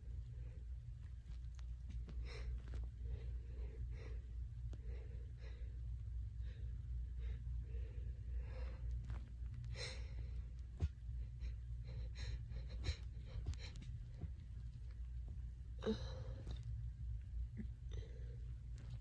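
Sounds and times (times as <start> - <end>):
woman breathing quickly: 1.9 - 15.0, 15.7 - 16.7.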